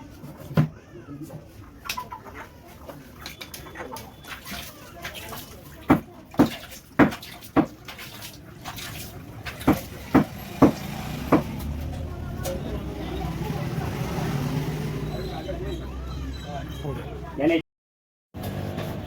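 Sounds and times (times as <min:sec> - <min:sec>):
cleaver chopping through bone: 0:09.6 - 0:11.7.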